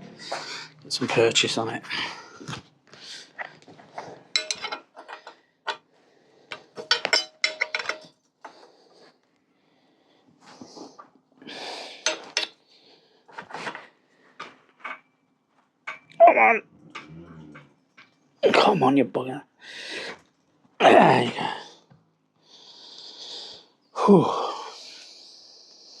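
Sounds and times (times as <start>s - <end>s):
spanner clinking on metal: 4.3s - 5.8s, 6.8s - 8.2s.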